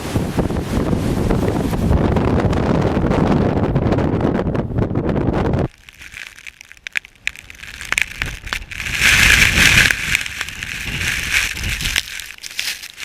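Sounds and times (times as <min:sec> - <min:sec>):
storm wind buffeting microphone: 0:00.0 - 0:05.7, 0:07.6 - 0:12.2
snow pellets ticking: 0:05.7 - 0:13.0.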